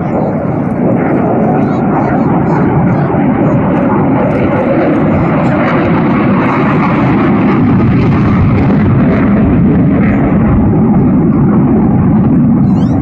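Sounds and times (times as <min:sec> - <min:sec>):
plane engine roar: 0:00.0 - 0:13.0.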